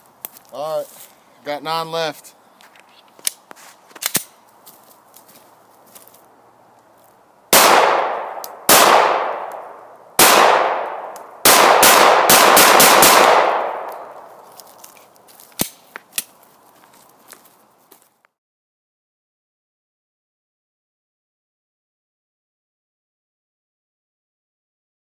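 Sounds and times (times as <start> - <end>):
pistol shots echoing: 7.5 - 14.1.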